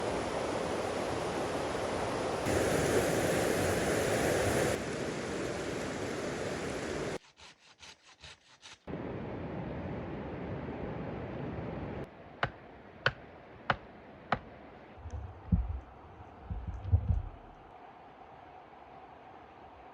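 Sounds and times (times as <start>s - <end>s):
outdoor rushing noise: 0.0s - 7.2s, 13.3s - 19.9s.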